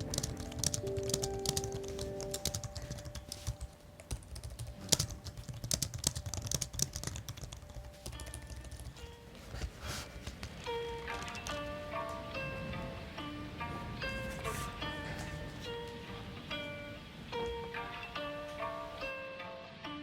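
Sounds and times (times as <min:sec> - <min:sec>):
mechanical keyboard typing: 0:00.0 - 0:09.1.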